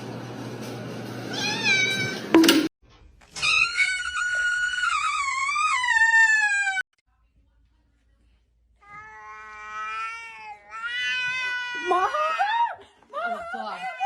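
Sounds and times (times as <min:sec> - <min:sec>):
cat meowing: 0:08.9 - 0:11.9.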